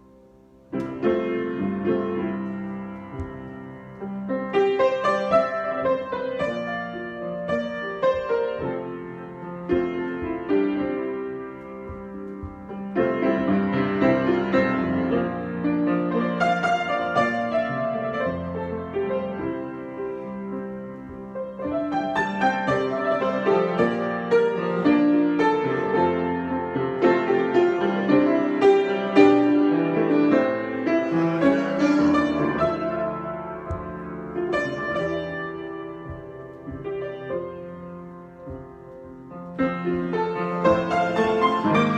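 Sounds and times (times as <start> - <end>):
solo piano: 0.0 - 41.9.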